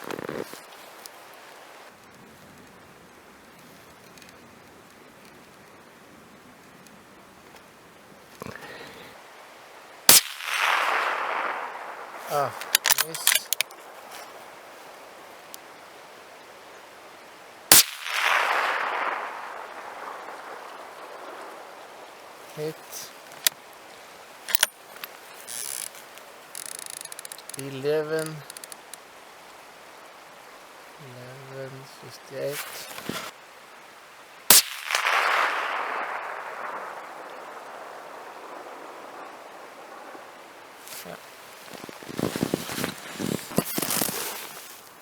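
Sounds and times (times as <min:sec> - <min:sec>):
rolling gunshot echo: 0:10.1 - 0:11.4, 0:34.5 - 0:36.4
suppressed rifle shot: 0:10.1 - 0:13.7, 0:17.7 - 0:20.1, 0:24.5 - 0:24.7, 0:34.5 - 0:37.8.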